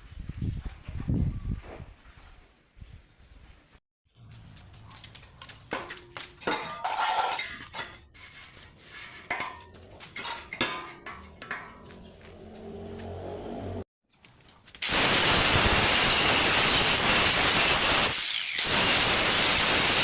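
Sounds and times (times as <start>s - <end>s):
metal parts clanking: 6.4s - 8.0s.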